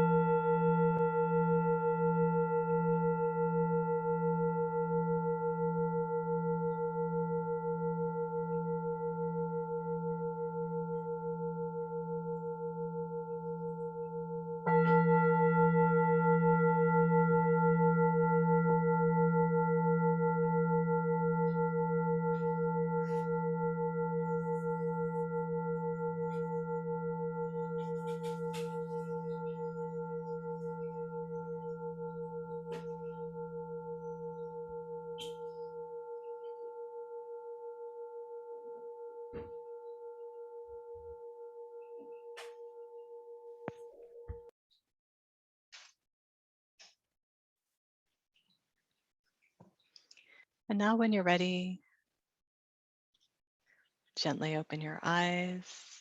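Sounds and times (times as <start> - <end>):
singing bowl ringing: 0.0 - 44.5.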